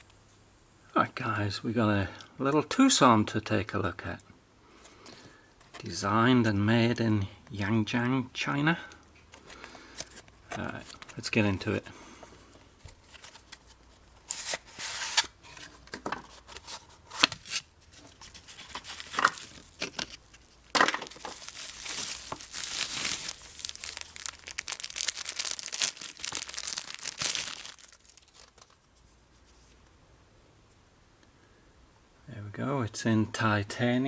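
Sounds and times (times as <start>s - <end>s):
packaging crinkling and tearing: 12.9s - 29.0s.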